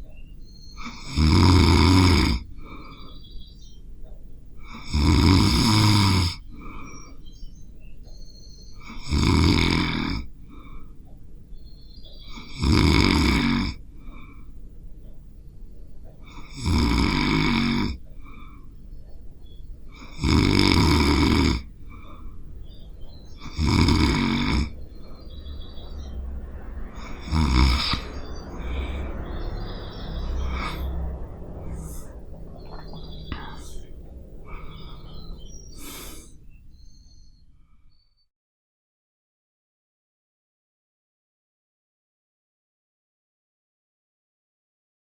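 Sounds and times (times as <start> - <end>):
person snoring: 0.8 - 3.0, 4.6 - 6.8, 8.8 - 10.3, 12.3 - 13.8, 16.2 - 18.0, 19.9 - 22.4, 23.4 - 26.1, 27.0 - 36.4.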